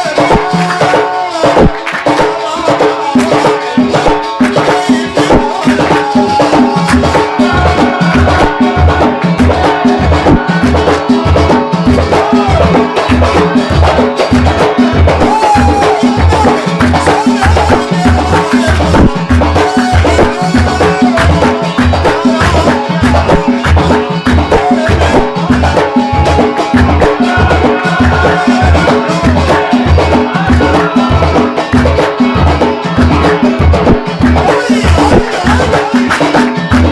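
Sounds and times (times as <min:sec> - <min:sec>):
sharp percussion strokes: 0:00.0 - 0:36.9.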